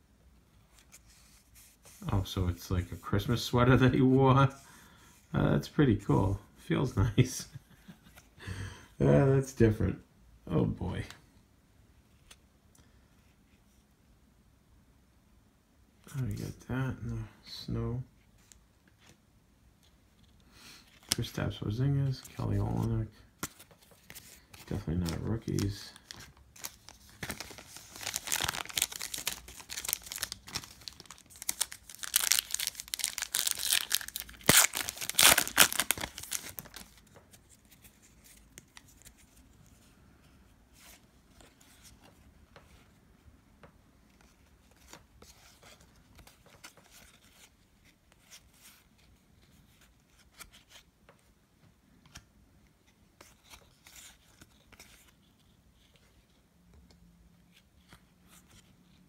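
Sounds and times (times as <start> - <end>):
cards rustling when handled: 19.8 - 39.9, 53.2 - 56.9
wrapper tearing and crinkling: 25.5 - 37.0.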